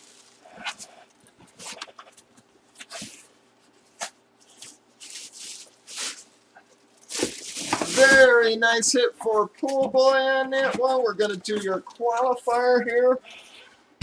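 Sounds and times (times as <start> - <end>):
packaging rustling and clicking: 4.0 - 8.4.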